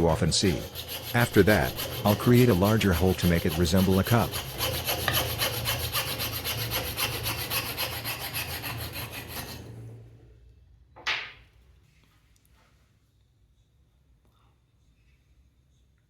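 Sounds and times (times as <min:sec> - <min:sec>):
tool rasping on wood: 0:00.0 - 0:09.8.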